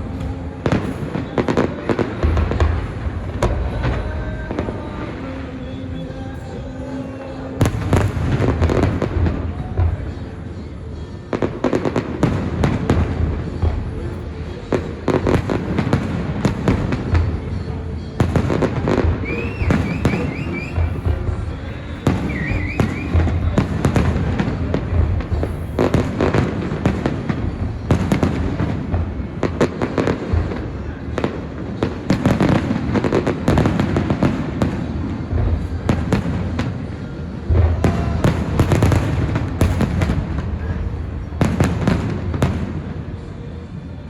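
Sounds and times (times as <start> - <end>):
fireworks bangs and crackling: 0.0 - 44.0
fireworks whistles: 15.5 - 24.6.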